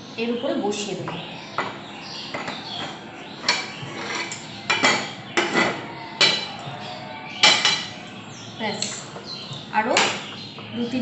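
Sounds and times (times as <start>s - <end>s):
metal cookware clanking: 2.3s - 6.6s, 7.4s - 8.0s.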